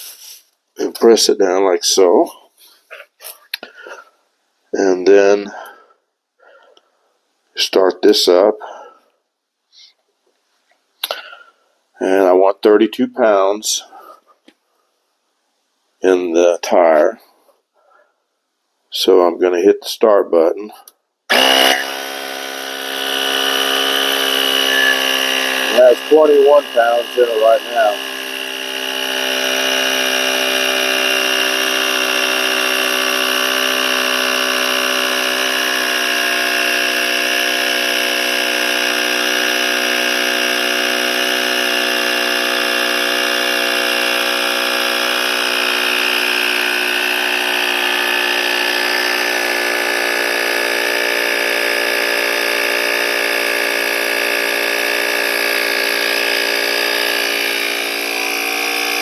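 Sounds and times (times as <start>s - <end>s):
electric air compressor humming: 0.0s - 0.4s, 21.3s - 59.0s.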